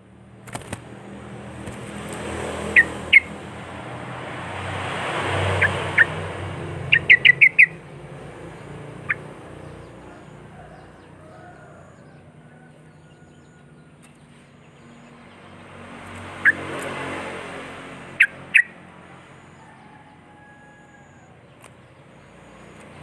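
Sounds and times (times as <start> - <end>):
bulbul calling: 2.7 - 3.4, 5.5 - 12.2, 18.1 - 23.0.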